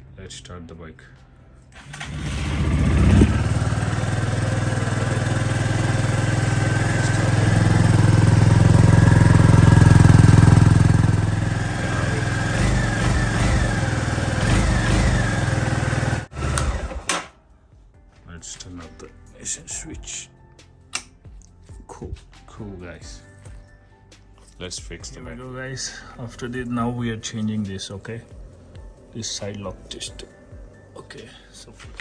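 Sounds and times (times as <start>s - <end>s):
scooter engine starting and running: 1.8s - 17.3s.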